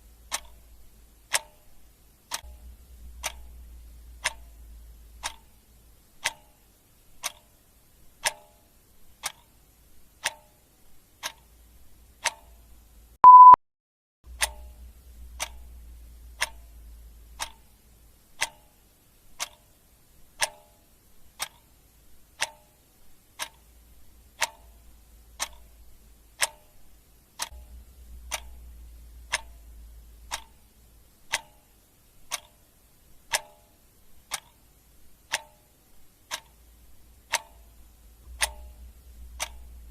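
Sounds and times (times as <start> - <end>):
clock ticking: 0.0 - 13.6, 14.3 - 39.9
loud single-pitched beep: 13.2 - 13.6.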